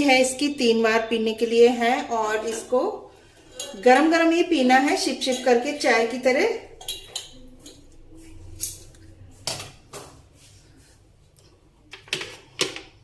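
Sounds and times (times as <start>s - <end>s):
dishes clinking and knocking: 6.7s - 8.0s.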